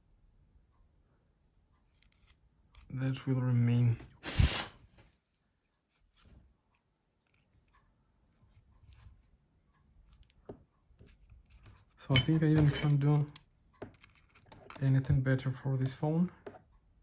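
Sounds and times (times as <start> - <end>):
small parts clicking and rustling: 10.1 - 15.2.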